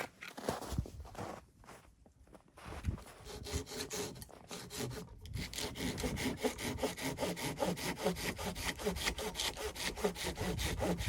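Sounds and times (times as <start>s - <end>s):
hand saw cutting wood: 3.2s - 11.0s.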